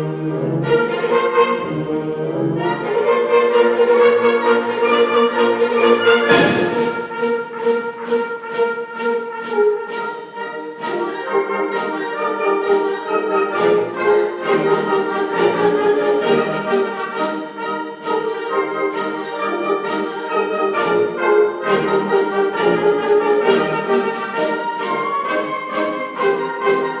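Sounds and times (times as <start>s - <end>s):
brass-led orchestral music: 0.0s - 27.0s
percussion beat: 2.6s - 7.4s
cymbal crash: 6.2s - 7.2s.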